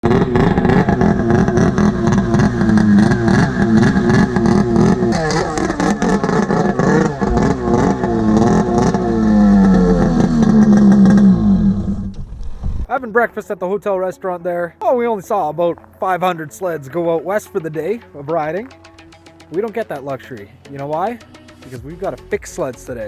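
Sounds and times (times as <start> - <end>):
snowmobile engine revving: 0.0 - 12.1.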